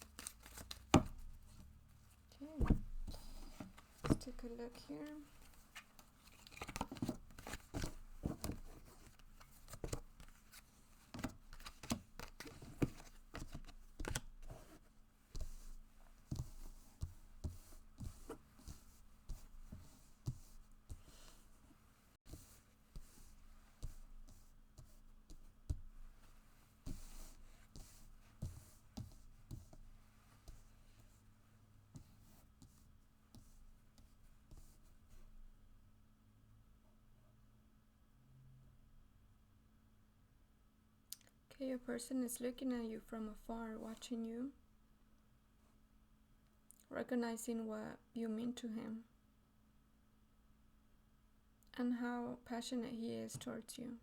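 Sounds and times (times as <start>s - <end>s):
cards shuffled and laid down: 0.0s - 1.4s, 2.6s - 4.4s, 5.1s - 10.6s.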